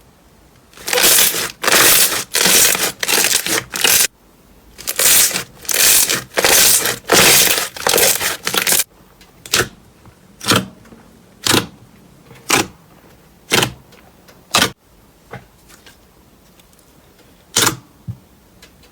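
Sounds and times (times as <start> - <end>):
slime crackling and crunching: 0.8 - 4.1, 4.8 - 8.9.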